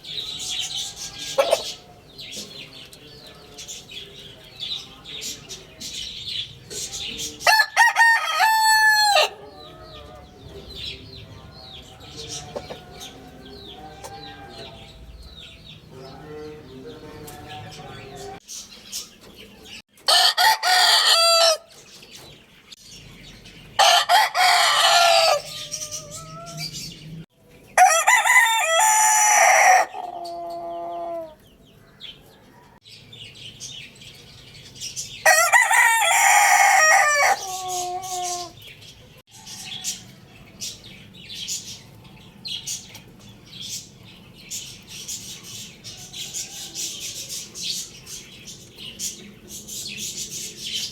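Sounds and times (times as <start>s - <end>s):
chicken clucking and chirping: 0.0s - 50.9s
rooster crowing: 7.4s - 10.2s, 20.0s - 21.7s, 23.8s - 26.7s, 27.8s - 31.4s, 35.2s - 38.5s.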